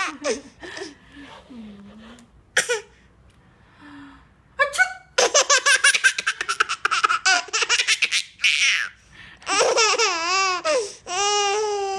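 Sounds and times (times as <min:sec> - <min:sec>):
baby belly-laughing: 0:05.2 - 0:11.9.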